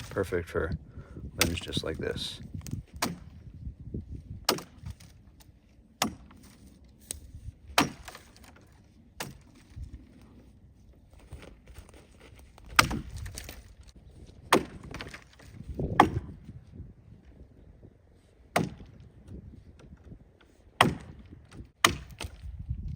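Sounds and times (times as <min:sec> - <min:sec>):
axe chopping limbs: 0:01.3 - 0:01.9, 0:02.5 - 0:03.6, 0:04.3 - 0:10.3, 0:11.2 - 0:16.6, 0:18.4 - 0:22.6.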